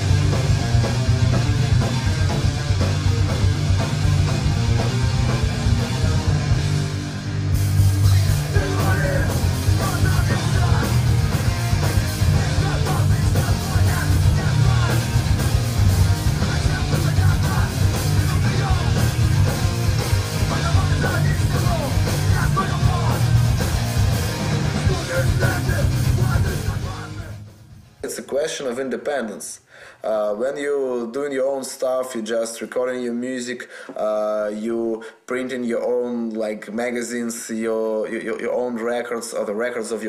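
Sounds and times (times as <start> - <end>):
punk rock music with vocals: 0.0 - 27.9.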